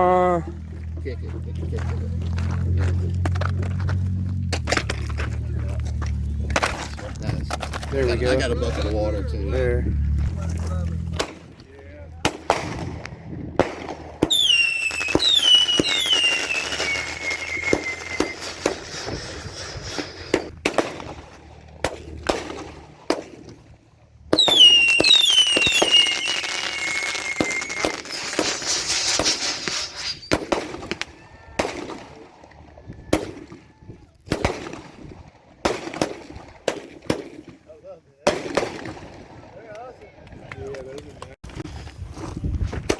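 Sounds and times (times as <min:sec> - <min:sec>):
firework bangs and cracks: 0:04.4 - 0:09.0, 0:10.3 - 0:33.6, 0:34.3 - 0:37.6, 0:38.2 - 0:39.6
firework whistles: 0:14.2 - 0:20.6, 0:24.3 - 0:31.2.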